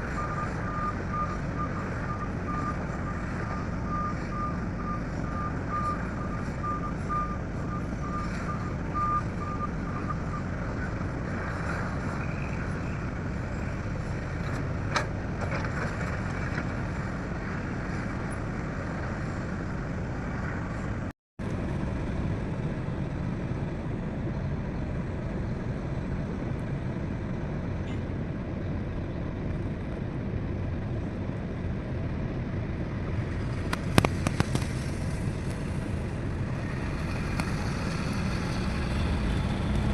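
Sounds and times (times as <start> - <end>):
heavy diesel machinery running: 0.0 - 39.9
reversing alarm beeping: 0.1 - 10.5.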